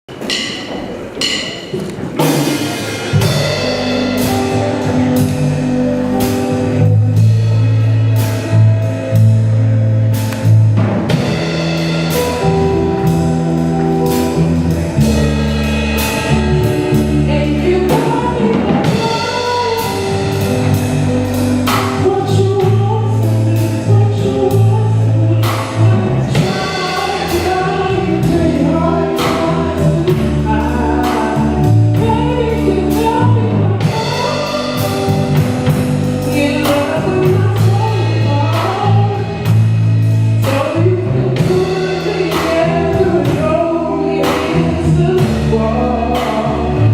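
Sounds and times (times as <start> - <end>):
drum kit backbeat: 0.0 - 46.9
live band playing soul song: 0.1 - 46.9
person singing: 11.2 - 46.9.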